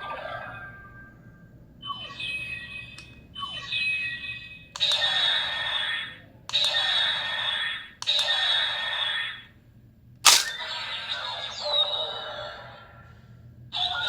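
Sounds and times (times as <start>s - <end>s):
sharp plastic click: 10.3s - 10.6s.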